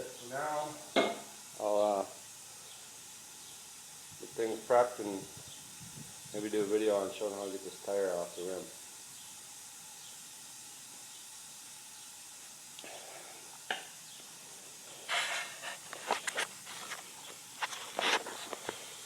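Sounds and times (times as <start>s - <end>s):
faint hiss: 0.0s - 19.0s
short rustling bursts: 15.0s - 19.0s.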